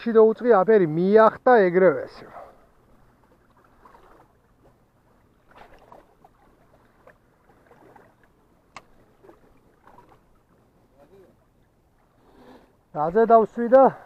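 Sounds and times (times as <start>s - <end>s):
sea water lapping against rocks: 2.2s - 10.6s.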